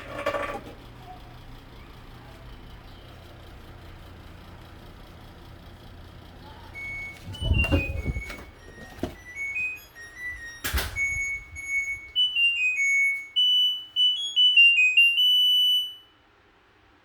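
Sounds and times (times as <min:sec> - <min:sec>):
washing machine beep melody: 0:06.6 - 0:16.2.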